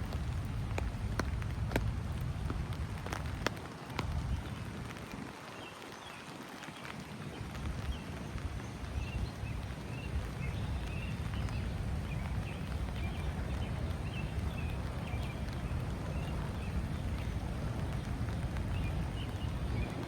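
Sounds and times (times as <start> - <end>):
steady low rumble: 0.0 - 4.5.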